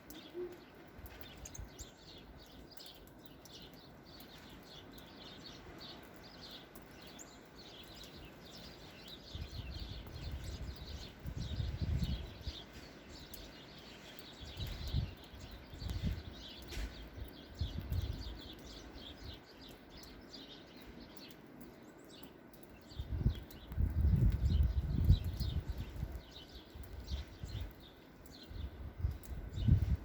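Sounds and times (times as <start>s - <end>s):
small birds chirping: 0.0s - 30.0s
wind rumbling on microphone: 7.9s - 20.2s, 22.9s - 30.0s.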